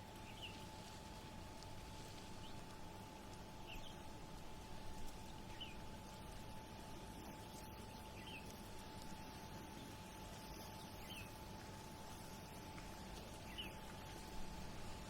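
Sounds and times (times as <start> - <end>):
faint constant hum: 0.0 - 15.0
small bird chirping: 0.2 - 0.6, 3.6 - 4.0, 5.5 - 5.8, 7.6 - 9.1, 9.8 - 11.4, 13.4 - 13.8.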